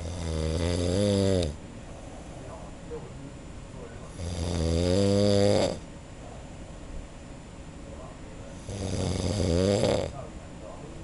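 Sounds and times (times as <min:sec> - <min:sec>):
man snoring: 0:00.0 - 0:01.6, 0:04.1 - 0:05.8, 0:08.6 - 0:10.2.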